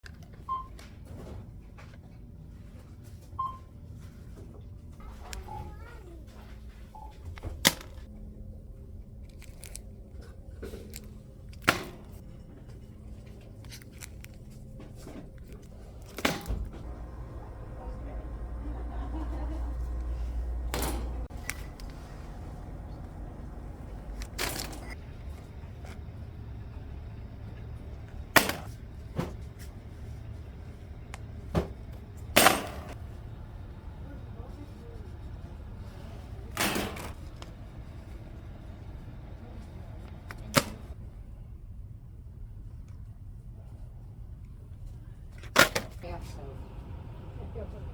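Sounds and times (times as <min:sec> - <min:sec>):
steady low hum: 0:01.0 - 0:47.9
items clacking and knocking: 0:13.5 - 0:25.0.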